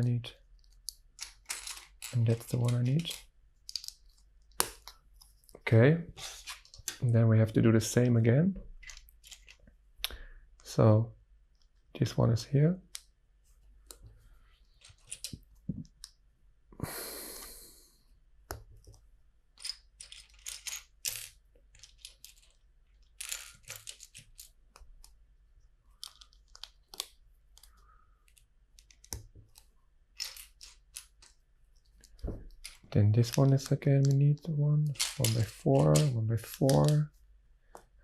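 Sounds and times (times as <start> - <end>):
plastic bricks clicking and clattering: 0.6 - 5.6, 6.2 - 7.1, 8.7 - 9.7, 14.7 - 16.1, 19.6 - 25.2, 25.9 - 37.1.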